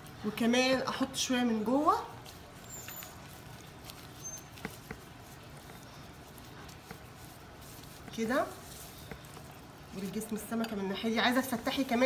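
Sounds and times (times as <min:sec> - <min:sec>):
soft handling sounds: 0:01.9 - 0:10.9.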